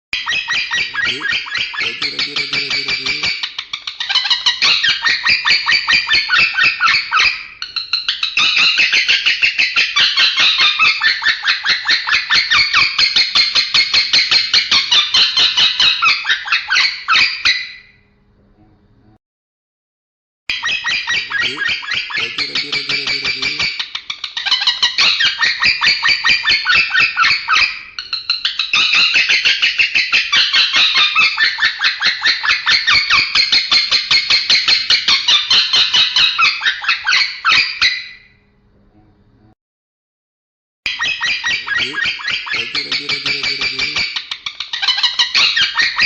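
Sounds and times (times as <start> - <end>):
lovebird scratchy chatter: 0.7 - 4.7, 21.0 - 24.6, 41.0 - 45.8.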